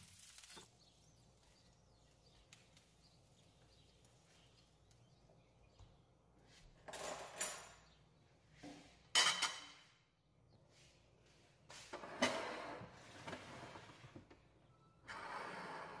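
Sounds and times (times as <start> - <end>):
dishes and utensils clattering: 6.8 - 8.0, 8.7 - 10.0, 11.9 - 14.0
sharp clink of dishes: 9.1 - 9.8.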